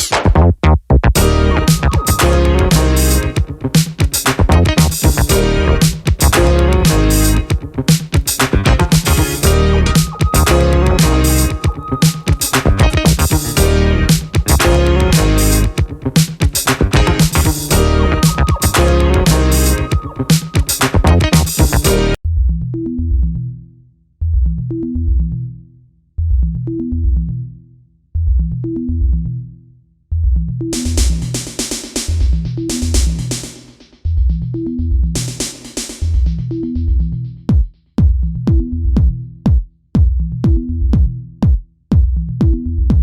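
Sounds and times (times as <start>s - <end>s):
upbeat funk music: 0.0s - 22.2s
low bass synth phrase: 1.2s - 3.7s, 4.5s - 7.9s, 8.6s - 16.2s, 16.8s - 20.3s, 21.0s - 22.2s.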